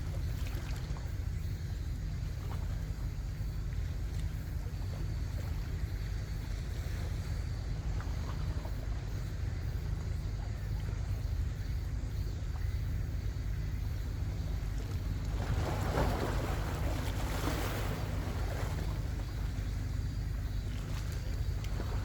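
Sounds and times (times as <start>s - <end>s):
wave surging and washing: 15.2s - 19.7s.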